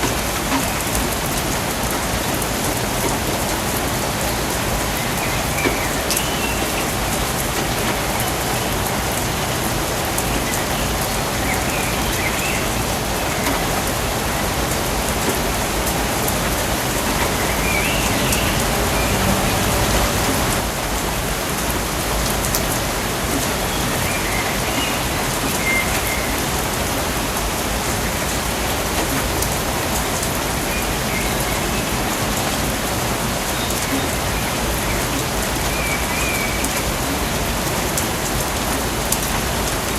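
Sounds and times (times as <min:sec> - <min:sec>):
steady rain falling: 0:00.0 - 0:39.9
faint high chirping calls: 0:10.2 - 0:13.8, 0:17.4 - 0:19.6.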